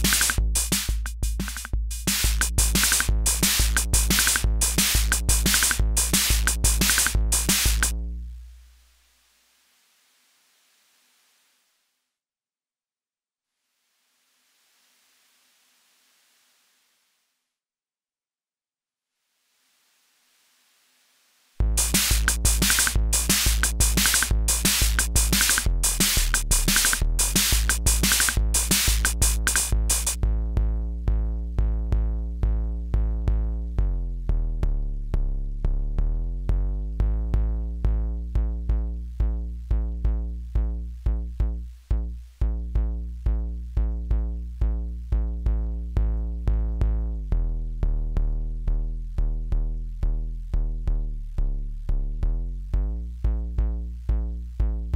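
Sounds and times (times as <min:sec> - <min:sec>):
bright hi-hats: 0:00.0 - 0:07.9, 0:21.6 - 0:30.2.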